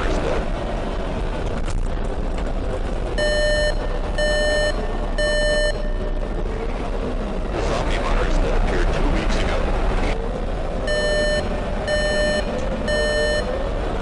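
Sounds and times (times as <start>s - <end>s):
background noise with low hum: 0.0s - 14.0s
electronic beeps: 3.2s - 6.3s, 10.9s - 13.6s.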